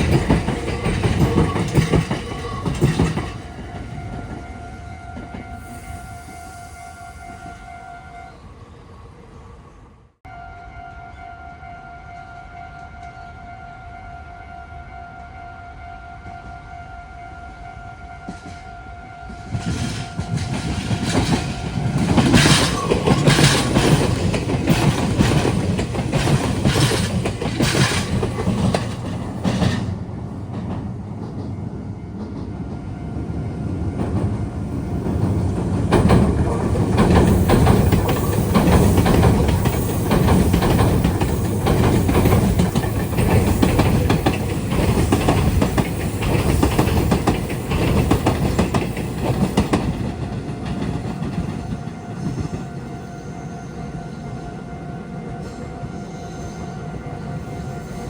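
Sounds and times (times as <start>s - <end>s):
wheels clattering over rail joints: 0.0s - 4.5s, 19.6s - 31.5s, 34.9s - 51.8s
electric trains rumbling past: 0.0s - 58.0s.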